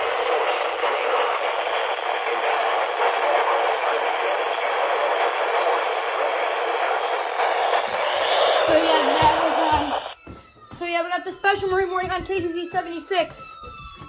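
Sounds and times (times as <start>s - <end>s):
radio static hiss: 0.0s - 10.2s.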